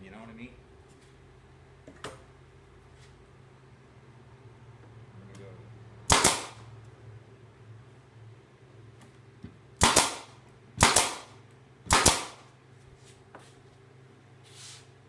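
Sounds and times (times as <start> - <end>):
nail gun firing into wood: 6.1 - 6.6, 9.8 - 12.5
short hiss of air: 14.5 - 14.9.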